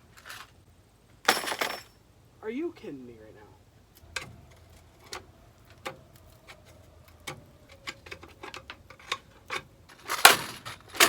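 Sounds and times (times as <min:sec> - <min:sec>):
hand tools clicking on metal: 0:03.9 - 0:11.0.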